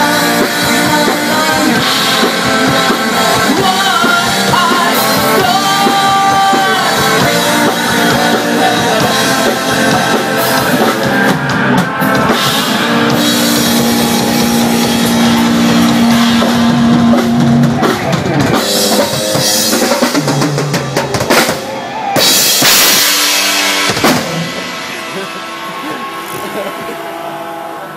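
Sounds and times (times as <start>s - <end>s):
drum kit: 0.0s - 27.9s
live rock band playing: 0.0s - 27.9s
loud cymbal crashes: 22.9s - 27.9s.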